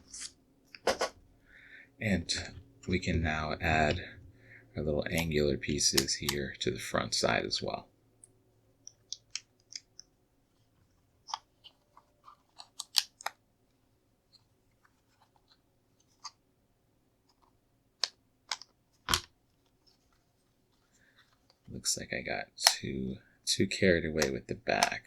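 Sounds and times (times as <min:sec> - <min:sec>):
plastic bricks clicking: 0:12.5 - 0:13.4, 0:18.0 - 0:19.3
plastic bricks snapping: 0:12.6 - 0:13.4, 0:18.0 - 0:19.3.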